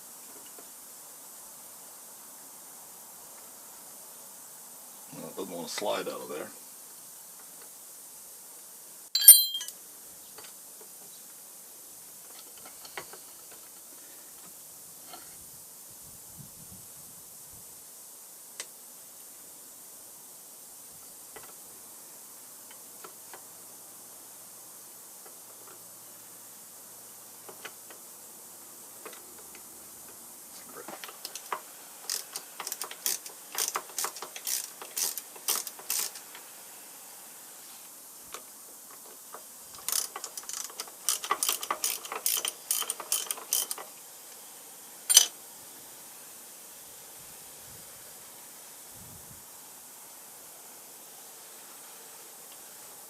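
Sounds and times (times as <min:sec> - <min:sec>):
faint steady hiss: 0:00.0 - 0:53.0
metallic clicking and rattling: 0:30.9 - 0:36.2, 0:39.7 - 0:43.9.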